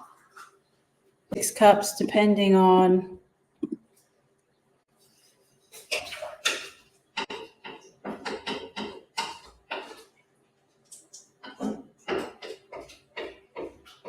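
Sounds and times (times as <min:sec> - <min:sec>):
pot and utensils clattering: 0:05.7 - 0:10.2, 0:11.0 - 0:14.0.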